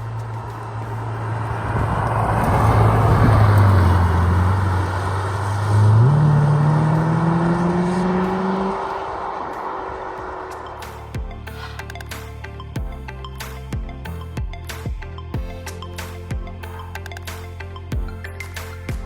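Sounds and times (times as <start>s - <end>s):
sports car engine revving by: 0.2s - 10.5s.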